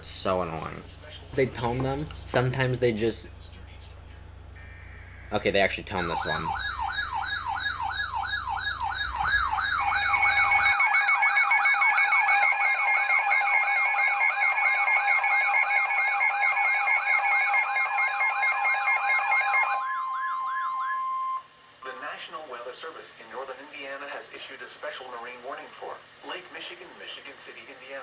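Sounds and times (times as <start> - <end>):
pulsing tones: 4.5 - 17.5
warbling alert tone: 4.6 - 14.9, 19.4 - 21.4.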